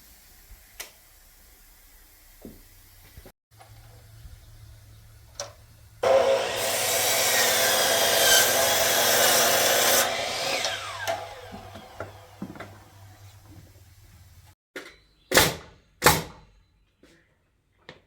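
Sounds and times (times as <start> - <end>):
saw motor winding down: 6.0 - 13.3
power saw cutting wood: 6.0 - 13.4.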